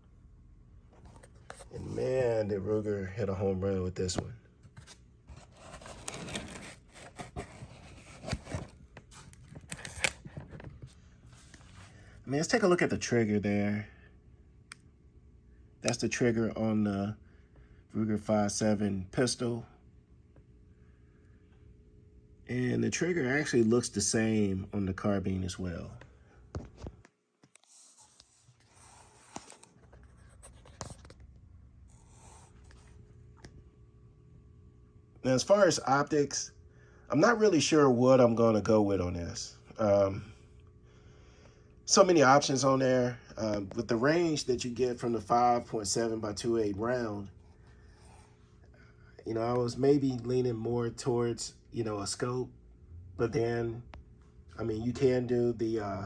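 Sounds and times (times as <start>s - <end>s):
steady low hum: 0.0s - 56.0s
rustling and rubbing of guns: 4.7s - 12.1s, 26.6s - 31.3s.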